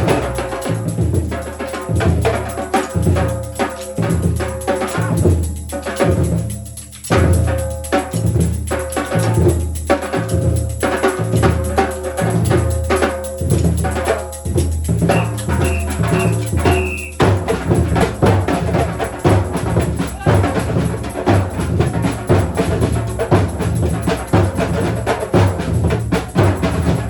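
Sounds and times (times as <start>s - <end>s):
samba percussion ensemble: 0.0s - 27.0s
deep bass drums: 6.2s - 27.0s
high whistle notes: 15.0s - 17.3s.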